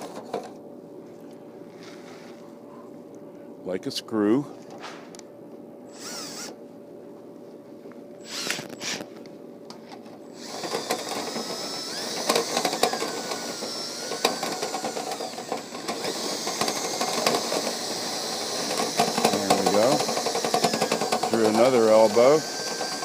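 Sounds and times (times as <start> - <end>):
drill whining: 5.9 - 6.6, 8.2 - 9.1, 10.3 - 23.0
brush rattling and scraping in duct: 10.5 - 23.0.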